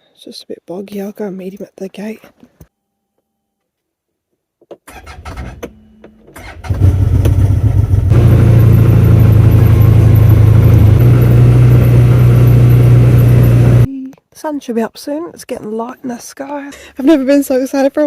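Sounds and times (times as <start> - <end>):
vehicle engine starting and running: 4.9 - 13.9.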